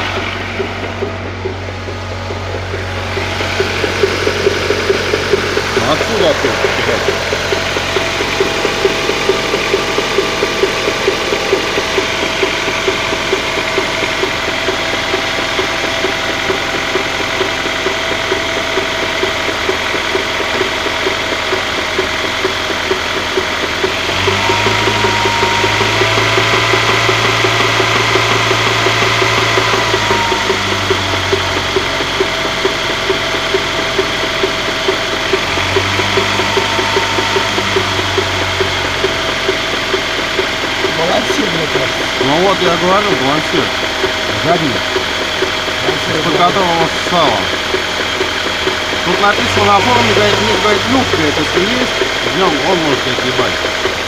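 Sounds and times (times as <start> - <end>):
steady deeper hum: 0.0 - 23.9
engine idling with regular knock: 0.0 - 54.0.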